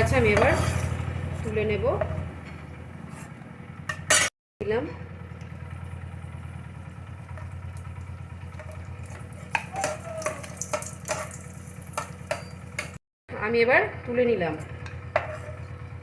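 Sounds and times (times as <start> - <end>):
metal spatula scraping pan: 0.0 - 1.6, 9.5 - 13.0, 15.2 - 15.6
light frying sizzle: 6.7 - 13.0.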